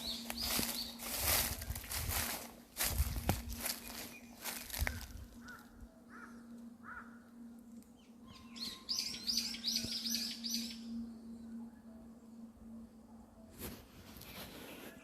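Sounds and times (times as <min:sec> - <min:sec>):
songbird chirping: 0:00.0 - 0:15.0.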